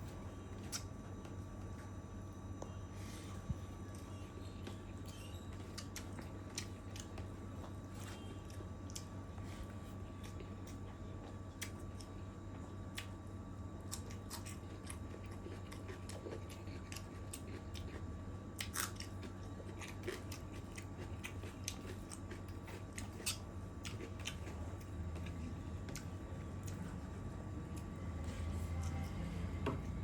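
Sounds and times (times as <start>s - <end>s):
wet mouth chewing sounds: 5.1s - 9.2s, 13.9s - 28.0s.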